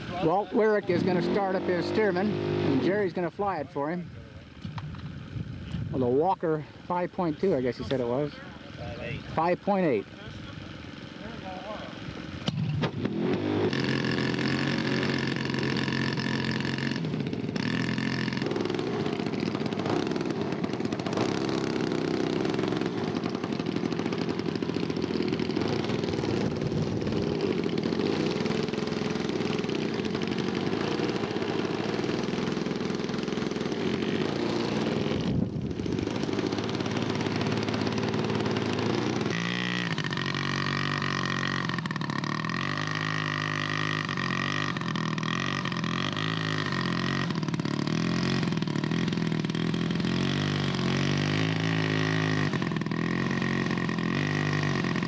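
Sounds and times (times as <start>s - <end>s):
model airplane engine running: 0.0s - 55.0s.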